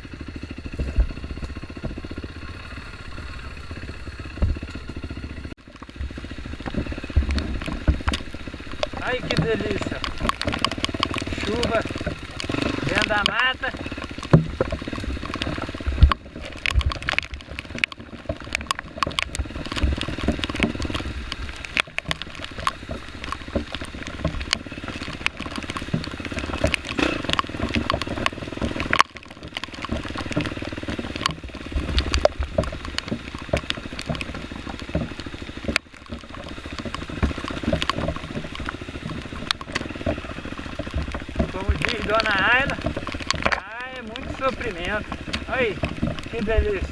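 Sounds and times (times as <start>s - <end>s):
bike clicks and knocks: 0.0s - 46.9s
dirt bike engine revving: 0.0s - 46.9s.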